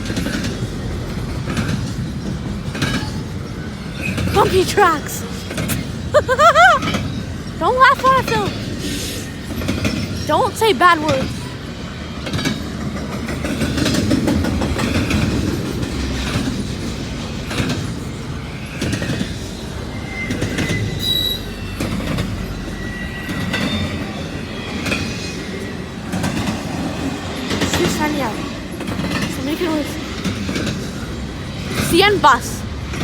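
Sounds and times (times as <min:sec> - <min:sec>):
train wheels clacking on rails: 0:00.0 - 0:33.0
high-pitched wheel squeals: 0:19.7 - 0:25.8.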